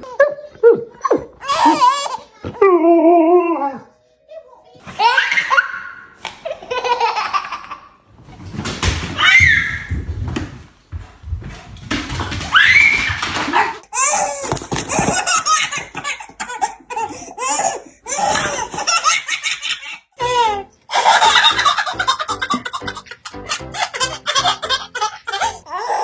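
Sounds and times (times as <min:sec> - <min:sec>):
baby giggling: 0:13.9 - 0:26.0
people laughing: 0:20.9 - 0:25.2.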